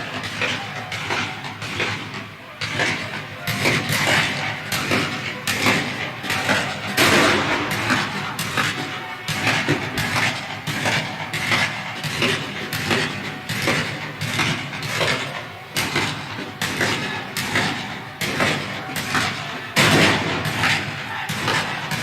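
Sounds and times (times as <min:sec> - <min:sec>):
battle din: 0:02.6 - 0:11.6, 0:15.0 - 0:22.0.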